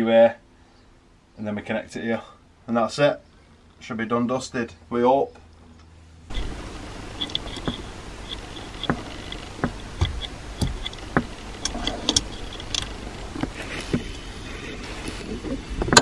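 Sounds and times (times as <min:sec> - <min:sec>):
steady background hum: 0:00.0 - 0:16.0
hand tools clicking on metal: 0:07.2 - 0:14.2.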